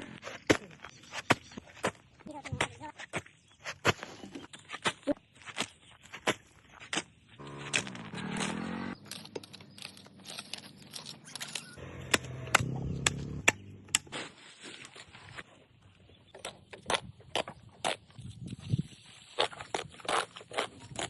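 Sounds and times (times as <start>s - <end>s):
tools clicking and scraping: 7.6s - 12.7s.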